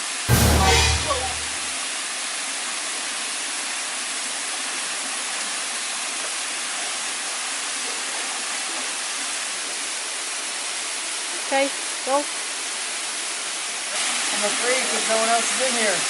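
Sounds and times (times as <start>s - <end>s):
waterfall rushing: 0.0s - 2.0s, 13.9s - 16.0s.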